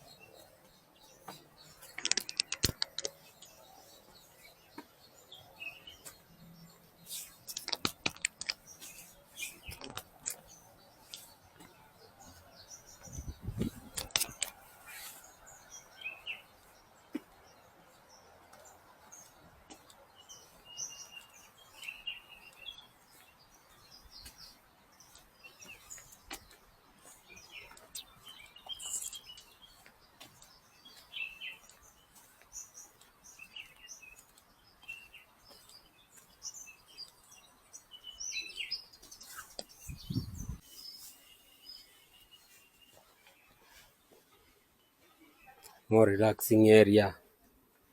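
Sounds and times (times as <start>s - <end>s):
small birds chirping: 0.0s - 47.9s
sharp clicks and knocks: 1.3s - 3.2s, 7.5s - 8.9s, 9.6s - 10.4s, 13.6s - 14.6s.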